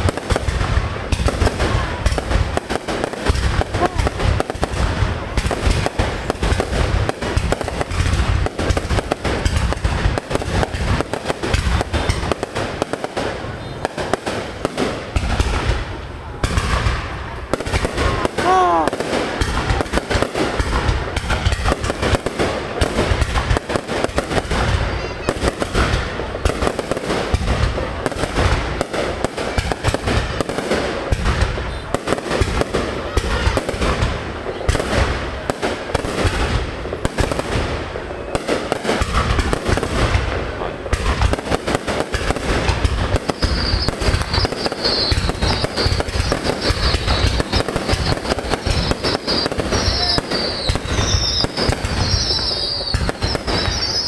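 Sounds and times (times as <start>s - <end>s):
fireworks bangs and crackles: 0.0s - 54.0s
high wavering firework whistle: 43.4s - 54.0s.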